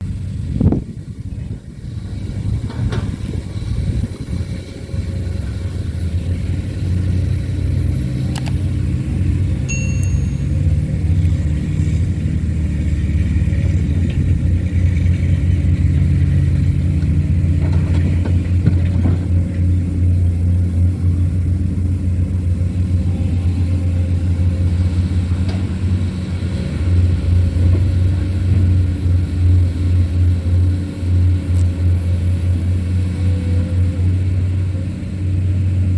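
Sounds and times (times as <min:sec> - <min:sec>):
excavator diesel engine running: 0:00.0 - 0:35.9.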